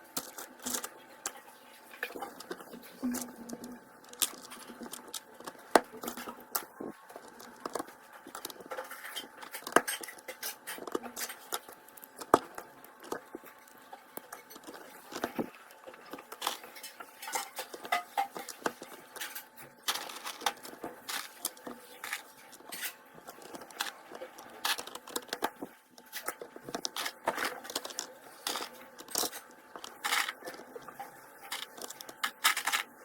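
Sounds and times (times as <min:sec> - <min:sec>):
plastic bricks clicking together: 0:02.3 - 0:08.7, 0:17.6 - 0:30.7, 0:31.5 - 0:32.9.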